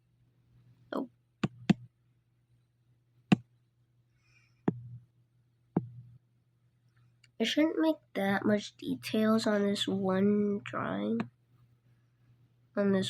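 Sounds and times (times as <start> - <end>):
faint steady hum: 0.0 - 13.0
pen tapping on touchscreen: 1.4 - 1.8, 4.7 - 5.0, 5.8 - 6.0.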